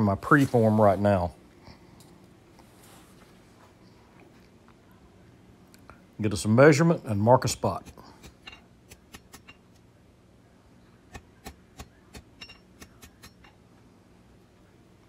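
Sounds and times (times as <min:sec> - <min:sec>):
metal tools clicking and tapping: 0:08.2 - 0:09.8, 0:11.1 - 0:13.6.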